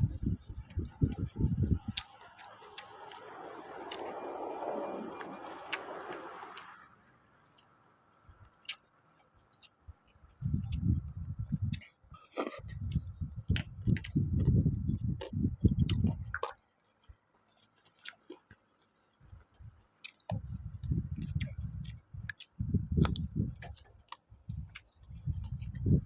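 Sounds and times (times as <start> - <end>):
person chewing with wet mouth clicks: 1.8 - 3.3, 8.4 - 8.9, 10.6 - 25.9.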